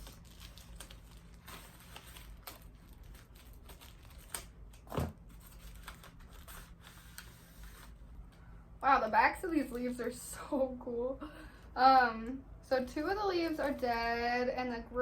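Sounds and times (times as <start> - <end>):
paper rustling and tearing: 0.0 - 8.1.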